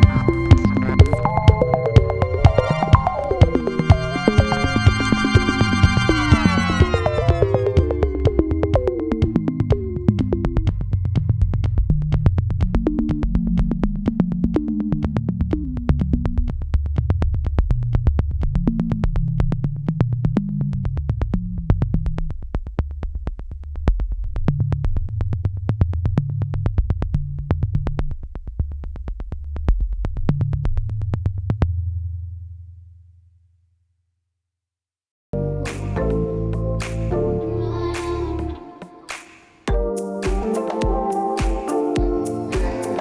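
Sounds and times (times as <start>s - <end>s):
synthesizer bass line: 0.0s - 16.6s, 35.4s - 38.8s, 39.7s - 43.0s
steady fast electronic beat: 0.0s - 18.6s, 38.8s - 43.0s.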